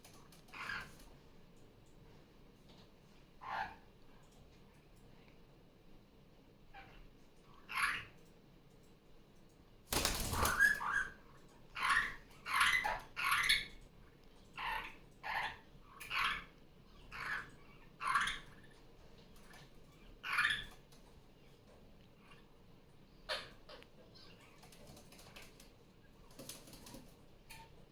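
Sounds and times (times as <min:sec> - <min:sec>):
parakeets calling: 0:07.6 - 0:08.1, 0:10.0 - 0:11.2, 0:11.8 - 0:13.8, 0:14.6 - 0:18.7, 0:20.0 - 0:20.8.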